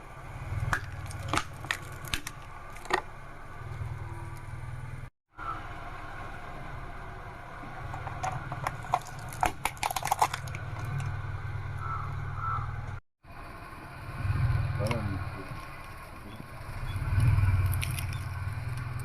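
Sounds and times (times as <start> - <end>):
car engine running: 0.0 - 19.0
plastic rattle crushed by tyre: 0.6 - 3.1, 7.9 - 11.2.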